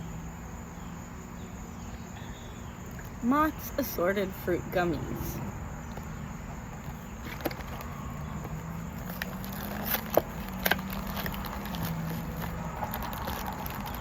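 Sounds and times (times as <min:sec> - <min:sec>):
low background hum: 0:00.0 - 0:14.0
snack packaging crinkling: 0:06.7 - 0:14.0.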